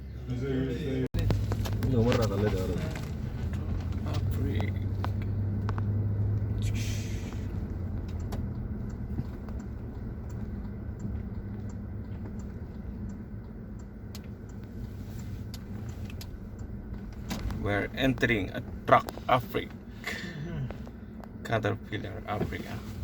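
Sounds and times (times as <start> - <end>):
vehicle engine hum: 0.0 - 23.0
brief hiss: 6.7 - 7.5
faint regular ticking: 7.4 - 22.2.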